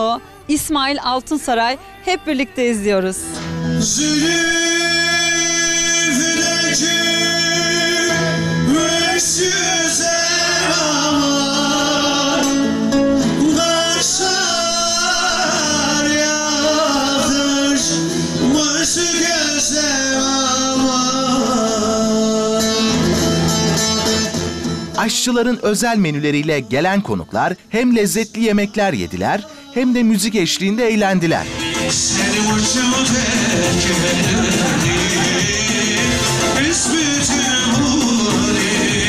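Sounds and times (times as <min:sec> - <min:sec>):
man singing folk song: 0:03.4 - 0:39.0
plucked lute accompaniment: 0:05.0 - 0:19.8, 0:20.4 - 0:25.2.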